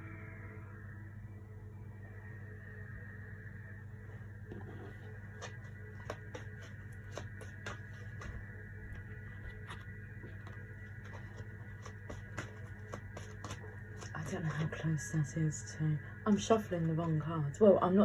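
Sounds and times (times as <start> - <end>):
meditation music drone: 0.0 - 18.0.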